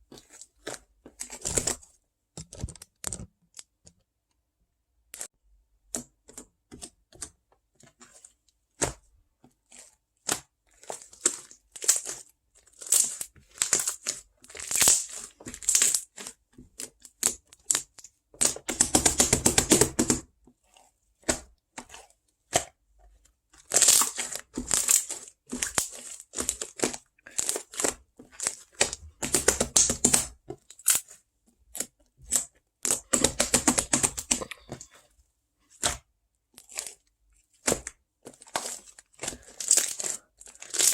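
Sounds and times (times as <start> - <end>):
handling taps and clicks: 2.4 - 4.4
crinkling and tearing: 9.7 - 16.4, 23.6 - 35.0, 36.6 - 37.1, 37.7 - 40.9.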